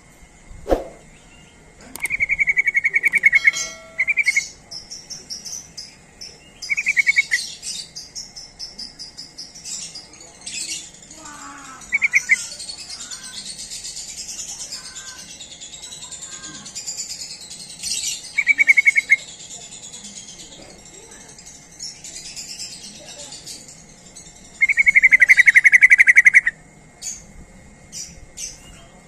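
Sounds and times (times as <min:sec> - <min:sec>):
sharp thump: 0:00.7 - 0:01.0
bird rattling trills: 0:00.7 - 0:27.3
high bird chirping chatter: 0:01.0 - 0:29.0.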